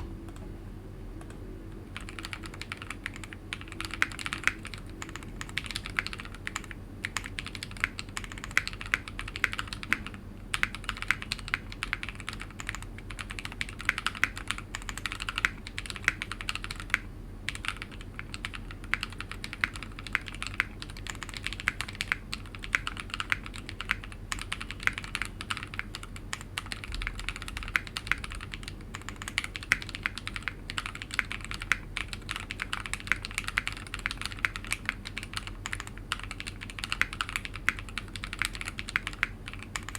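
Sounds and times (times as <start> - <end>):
mechanical keyboard typing: 1.2 - 39.9.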